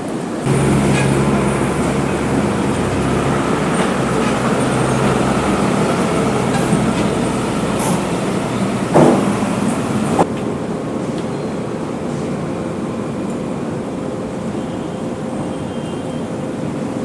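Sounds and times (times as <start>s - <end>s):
city road traffic: 0.0s - 17.0s
vehicle engine running: 0.5s - 10.3s.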